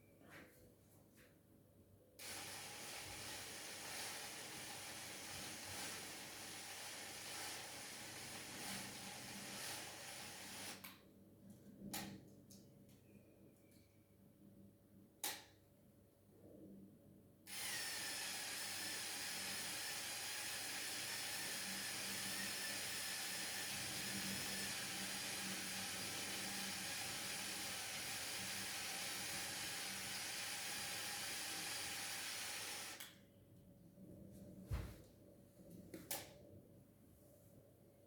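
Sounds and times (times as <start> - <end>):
electric motor whirring through gears: 17.5 - 33.0.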